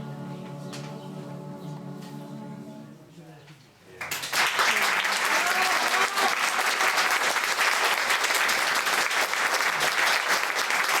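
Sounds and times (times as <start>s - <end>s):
audience applauding: 4.0s - 11.0s.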